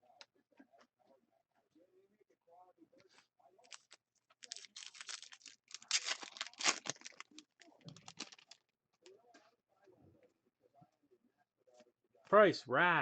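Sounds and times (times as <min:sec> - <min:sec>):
cards rustling: 0:03.6 - 0:08.6
wrapper crinkling and tearing: 0:03.6 - 0:08.6.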